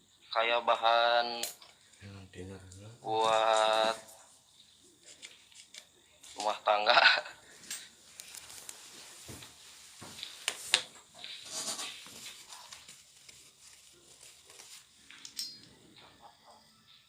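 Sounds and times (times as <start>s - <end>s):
muffled voice: 0.2s - 4.2s, 6.2s - 7.4s.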